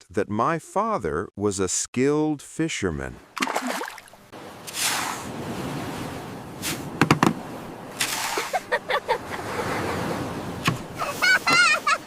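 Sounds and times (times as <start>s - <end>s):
surf washing on beach: 4.4s - 12.0s.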